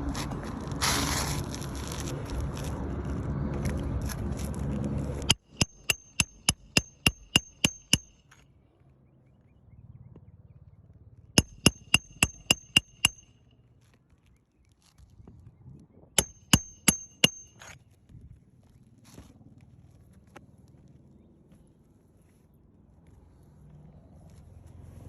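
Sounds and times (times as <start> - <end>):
rough scraping: 0.0 - 8.2
hammer striking nails: 5.3 - 8.2, 11.4 - 13.3, 16.2 - 17.7.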